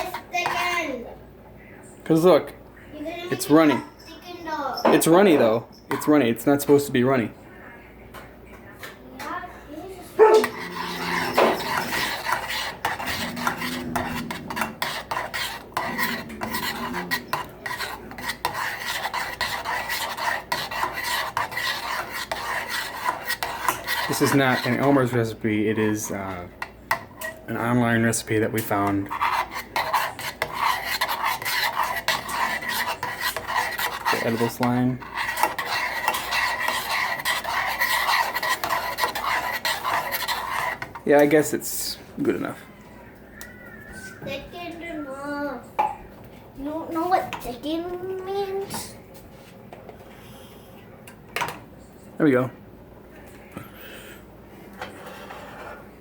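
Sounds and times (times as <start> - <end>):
utensil stirring and scraping saucepan: 0.0 - 1.0, 10.1 - 42.6, 54.8 - 56.0.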